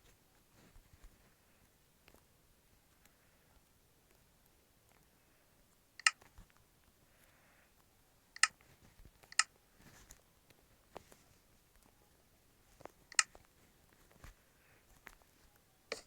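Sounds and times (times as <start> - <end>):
sharp metallic clicks: 6.0 - 6.2, 8.4 - 8.6, 13.1 - 13.4.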